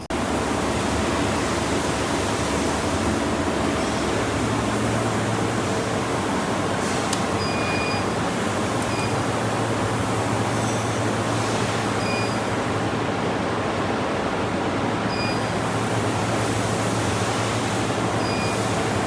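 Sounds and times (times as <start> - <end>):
furnace rushing hum: 0.0 - 19.0
click: 7.1 - 7.3, 8.8 - 9.1
short electronic beep: 7.4 - 8.1, 8.9 - 9.2, 12.0 - 12.4, 18.2 - 18.7.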